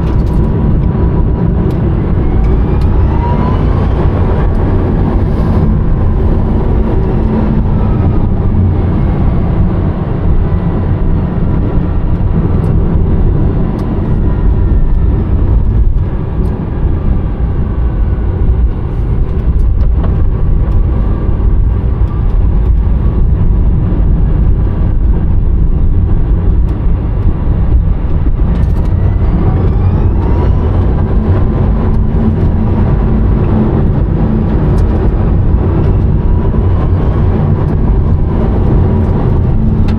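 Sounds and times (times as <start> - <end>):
road and wind rumble: 0.0 - 39.9
electric motor whine: 0.6 - 18.6, 28.0 - 39.9.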